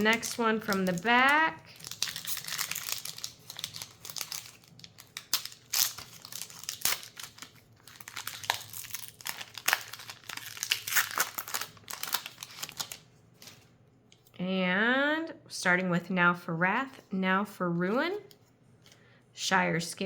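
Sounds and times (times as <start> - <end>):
foil wrapper crinkling and tearing: 0.0 - 13.6.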